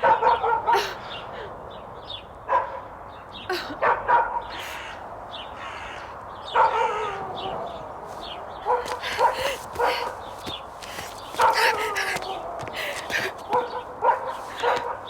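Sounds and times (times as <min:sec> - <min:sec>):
dog barking: 0:00.0 - 0:00.8, 0:02.5 - 0:02.9, 0:03.8 - 0:04.6, 0:06.5 - 0:10.2, 0:11.0 - 0:15.0.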